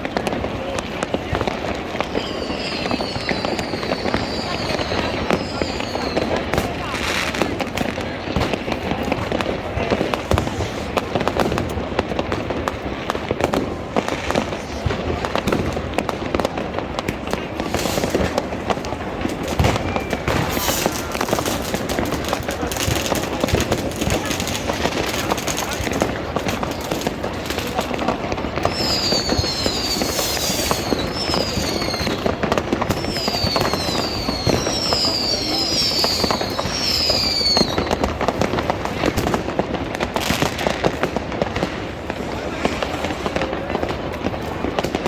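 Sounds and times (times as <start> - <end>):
fireworks and firecrackers banging: 0.0 - 45.0.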